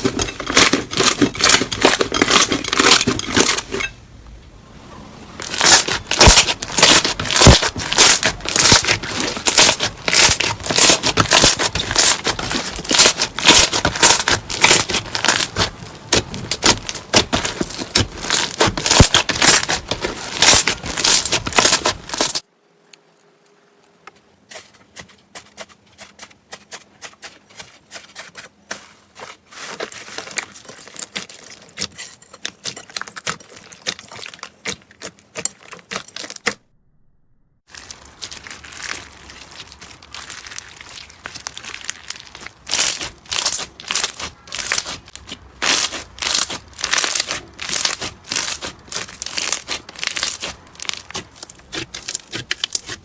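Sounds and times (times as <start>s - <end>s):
slime crackling and popping: 5.4s - 22.4s, 37.7s - 53.0s.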